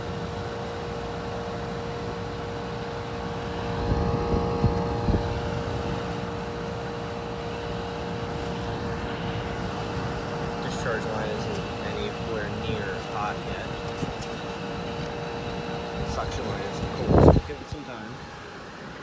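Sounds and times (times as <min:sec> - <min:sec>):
dehumidifier humming: 0:00.0 - 0:19.0.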